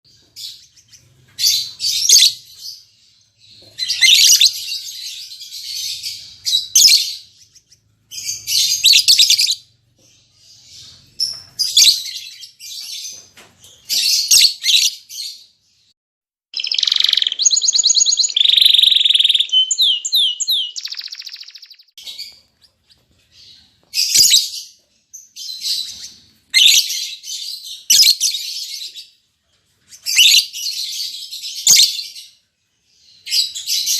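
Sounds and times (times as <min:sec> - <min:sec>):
lovebirds chattering shrilly: 0:16.6 - 0:24.5.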